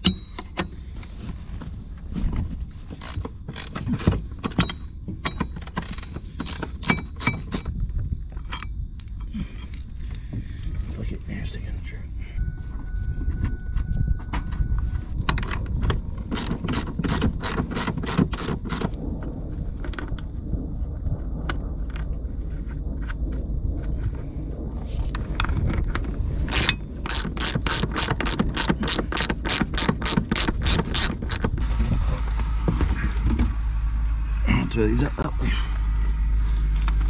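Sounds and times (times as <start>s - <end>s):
ratchet wrench clicking: 3.0s - 7.7s, 16.3s - 18.8s, 26.5s - 31.4s.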